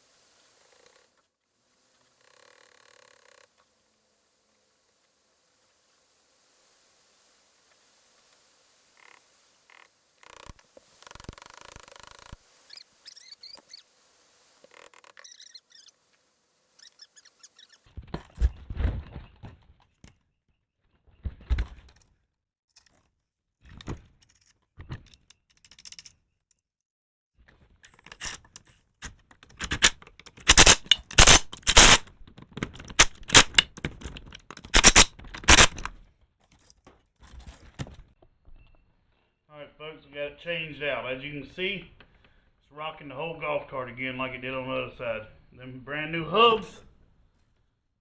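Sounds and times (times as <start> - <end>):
loud sharp clanks: 29.6 - 32.0.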